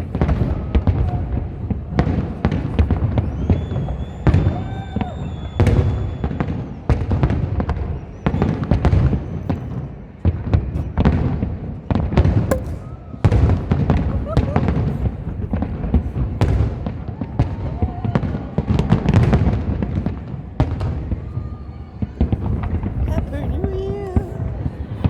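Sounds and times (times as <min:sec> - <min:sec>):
fireworks whistling: 0:00.0 - 0:11.2, 0:12.5 - 0:16.8
fireworks bursts and bangs: 0:00.0 - 0:25.0.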